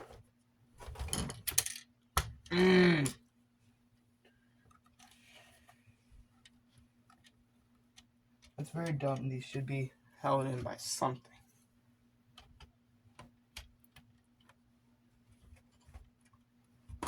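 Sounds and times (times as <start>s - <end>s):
person groaning in frustration: 2.5s - 3.2s.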